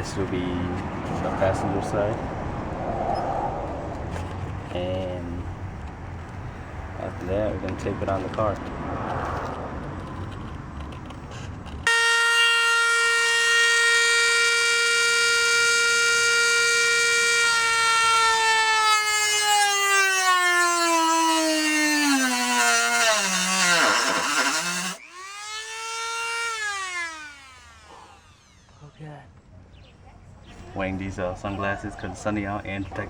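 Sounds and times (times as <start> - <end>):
rotary tool whining cutting metal: 11.8 - 29.0.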